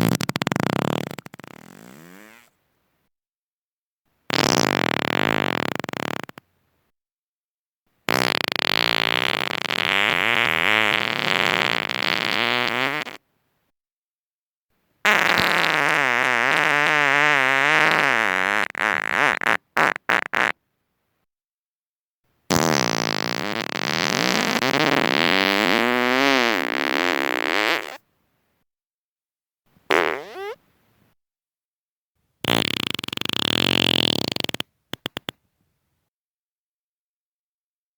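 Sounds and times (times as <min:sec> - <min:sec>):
person farting: 0:00.0 - 0:02.6, 0:04.3 - 0:06.4, 0:08.1 - 0:13.2, 0:15.0 - 0:20.6, 0:22.5 - 0:28.0, 0:29.9 - 0:30.6, 0:32.4 - 0:35.4.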